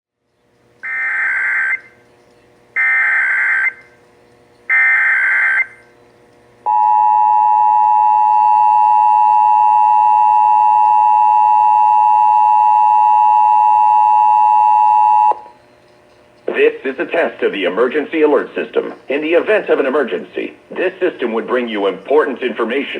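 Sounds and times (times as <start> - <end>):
data header bursts: 0.8 - 1.9, 2.8 - 3.9, 4.7 - 5.8
two-tone attention signal: 0.8 - 2.0, 2.8 - 3.9, 4.7 - 5.8, 6.7 - 15.4.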